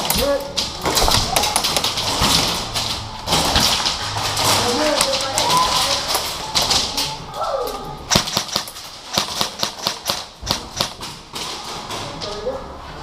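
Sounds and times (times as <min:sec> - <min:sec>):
airsoft gun shots: 0:08.1 - 0:11.0.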